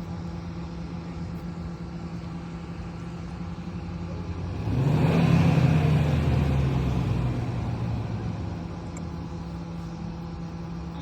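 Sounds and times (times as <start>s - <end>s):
engine humming: 0.0s - 11.0s.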